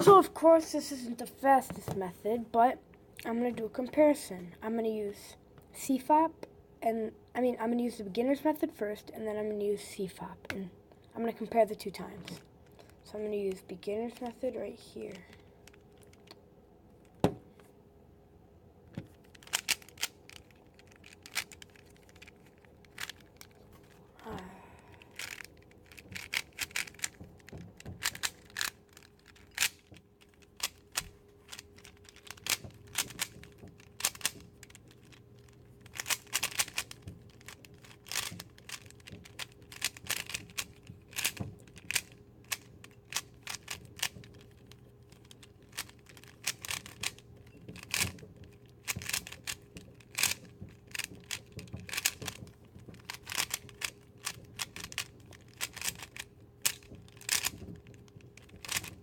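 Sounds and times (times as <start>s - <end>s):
puzzle cube plastic clicks: 11.8s - 14.5s, 15.1s - 17.6s, 19.0s - 59.0s.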